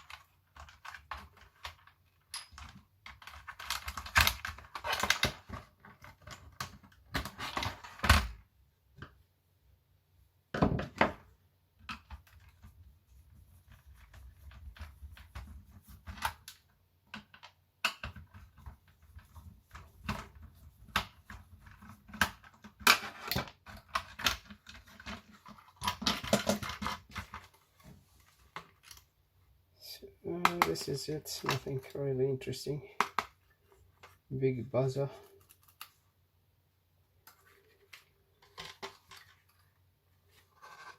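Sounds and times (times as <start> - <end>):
plastic parts clattering: 0.0 - 8.4, 13.8 - 29.1, 37.3 - 40.9.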